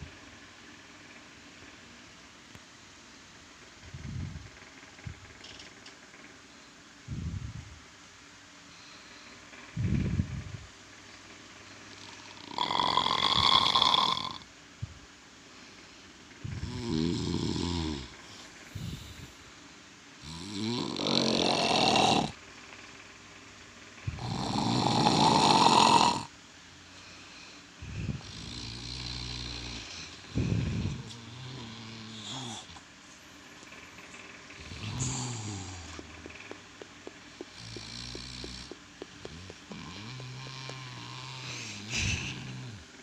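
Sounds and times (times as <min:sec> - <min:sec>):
man snoring loudly: 0:11.9 - 0:14.5, 0:16.5 - 0:18.2, 0:20.2 - 0:22.4, 0:24.1 - 0:26.3, 0:28.1 - 0:32.8, 0:34.6 - 0:36.3, 0:37.4 - 0:42.9.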